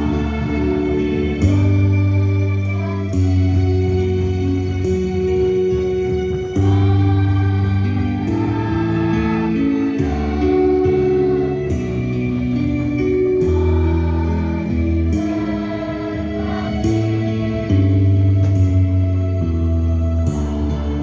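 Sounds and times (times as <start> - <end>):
children's choir singing: 0.0 - 2.0, 5.5 - 18.2, 20.3 - 21.0
instrumental accompaniment chords: 0.0 - 21.0.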